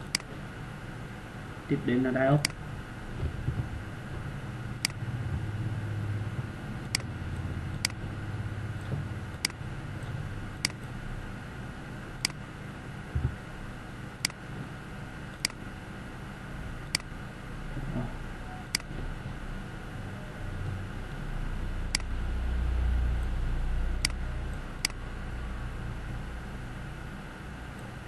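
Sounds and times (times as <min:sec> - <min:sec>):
computer fan hum: 0:00.0 - 0:28.0
computer mouse clicking: 0:04.8 - 0:05.0, 0:24.8 - 0:25.0.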